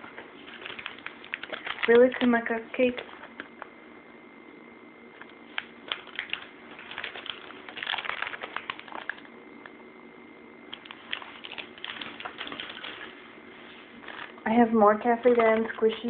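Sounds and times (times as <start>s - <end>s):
faint steady hum: 0.0s - 16.0s
plastic crinkling toys handled: 0.1s - 3.5s, 5.4s - 9.3s, 10.7s - 14.3s, 15.2s - 16.0s.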